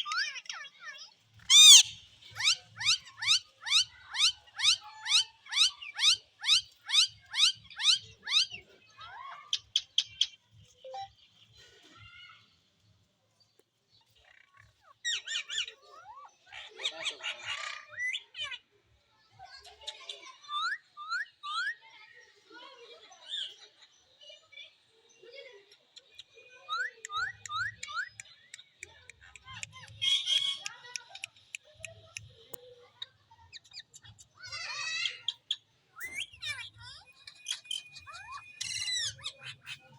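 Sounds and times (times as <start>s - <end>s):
parrot chirping and chattering: 0.1s - 8.6s, 26.1s - 39.9s
parrot chirping and whistling: 1.5s - 1.9s
parrot harsh squawk: 1.5s - 8.4s.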